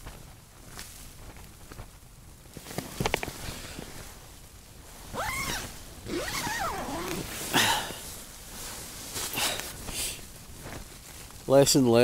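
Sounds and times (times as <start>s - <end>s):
tent fabric rustling: 0.0s - 12.0s
tent zip rasping: 5.0s - 9.9s.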